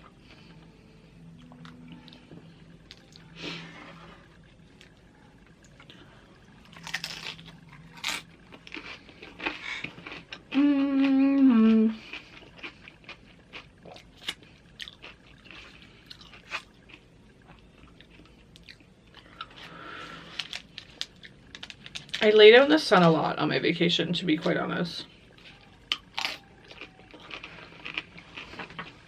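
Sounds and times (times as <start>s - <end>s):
chewing crunchy chips: 5.6s - 22.3s, 25.3s - 29.0s.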